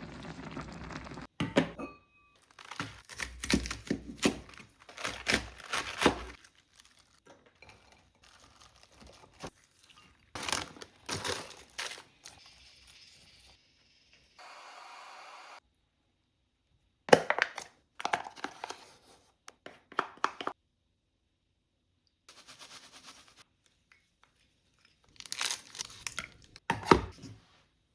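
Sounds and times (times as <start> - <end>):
plastic packaging crinkling: 2.4 - 12.4, 25.0 - 26.6
containers knocking and clicking: 19.5 - 20.5.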